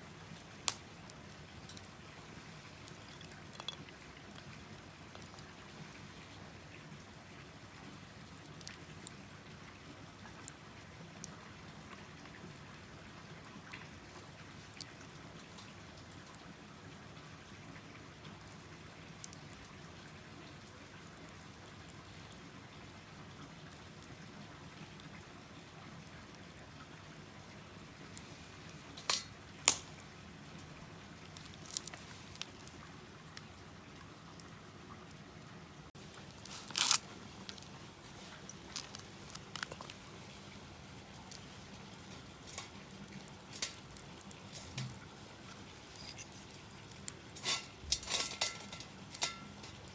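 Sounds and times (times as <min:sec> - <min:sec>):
fire hissing: 0:00.0 - 0:07.4, 0:26.9 - 0:34.4, 0:35.9 - 0:49.9
fire crackles and pops: 0:00.0 - 0:49.9.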